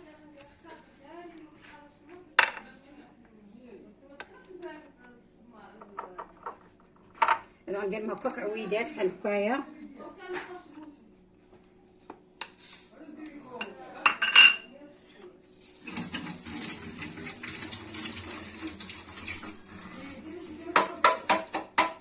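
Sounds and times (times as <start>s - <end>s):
scraping and rattling against pot: 15.6s - 21.9s.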